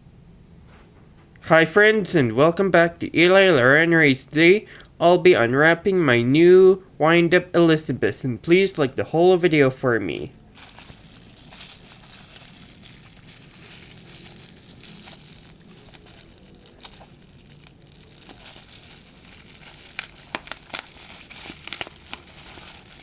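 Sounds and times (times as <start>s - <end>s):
packaging crinkling and tearing: 10.2s - 23.0s.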